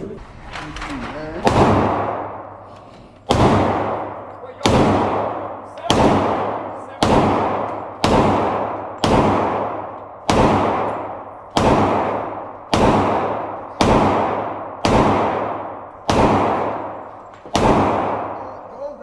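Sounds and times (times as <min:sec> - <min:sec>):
handgun single shots echoing: 0:03.3 - 0:18.4.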